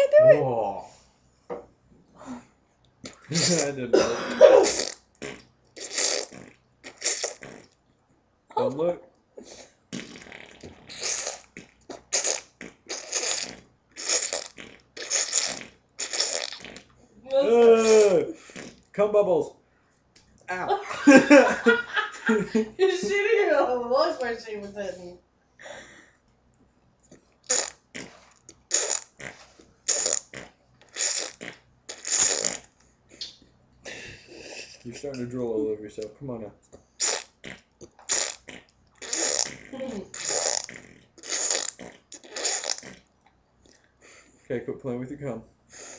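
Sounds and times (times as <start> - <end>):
person imitating farts: 3.0 - 7.7, 9.4 - 18.8, 27.5 - 33.3, 37.0 - 43.1.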